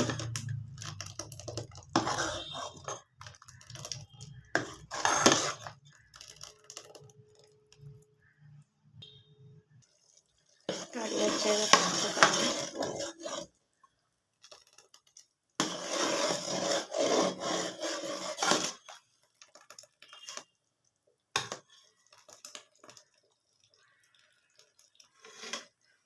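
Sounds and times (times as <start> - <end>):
spoon scraping a pot: 0.0 - 7.5, 10.5 - 13.6, 15.6 - 19.0, 25.0 - 25.9.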